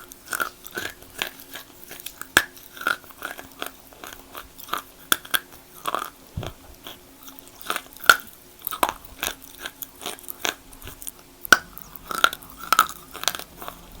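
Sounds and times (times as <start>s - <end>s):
chewing and crunching chalk: 0.0s - 14.0s.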